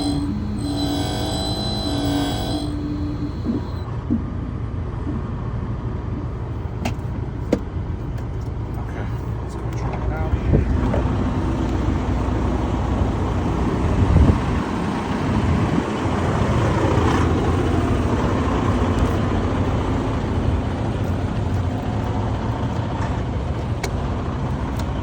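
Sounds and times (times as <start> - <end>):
faint hum: 0.0 - 6.8
motor vehicle rumbling: 0.0 - 25.0.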